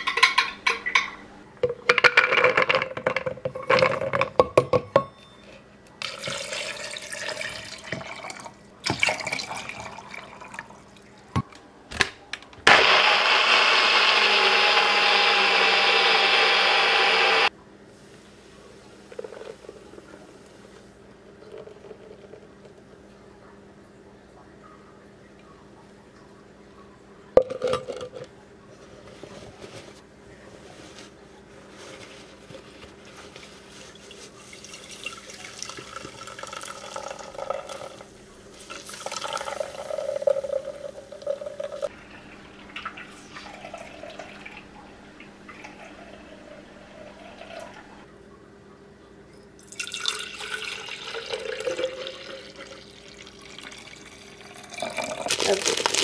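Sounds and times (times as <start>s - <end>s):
kitchen handling clicks and knocks: 0.0s - 5.2s
faint steady hum: 0.0s - 56.0s.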